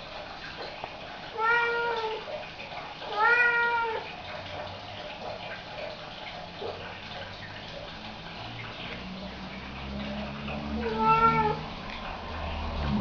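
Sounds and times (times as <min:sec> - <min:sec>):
cat meowing: 0:01.4 - 0:02.2, 0:03.1 - 0:04.1, 0:10.8 - 0:11.7.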